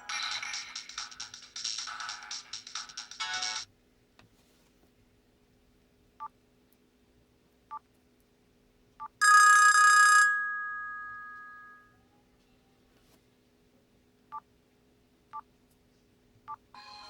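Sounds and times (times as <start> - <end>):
bell-like ringtone: 9.2 - 11.9.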